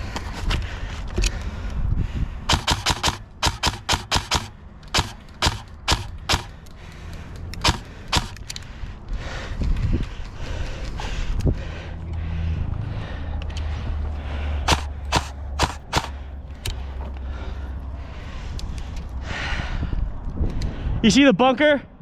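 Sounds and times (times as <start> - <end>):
airsoft rifle shots: 2.5 - 6.6, 7.6 - 8.4, 14.7 - 16.2.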